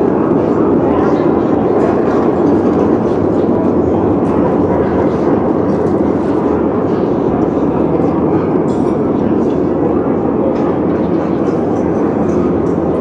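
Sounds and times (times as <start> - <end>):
slowed reverberant crowd chatter: 0.0 - 13.0.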